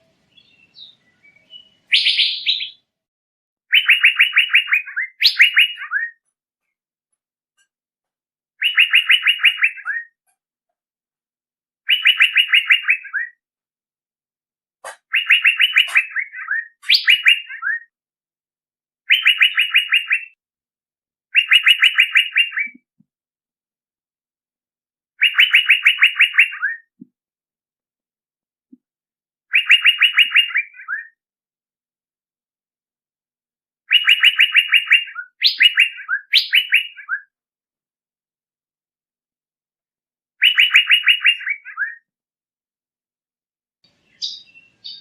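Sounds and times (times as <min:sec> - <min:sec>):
bird call: 0:00.0 - 0:02.8, 0:08.6 - 0:10.2, 0:14.8 - 0:17.9, 0:33.9 - 0:37.3, 0:40.4 - 0:42.0.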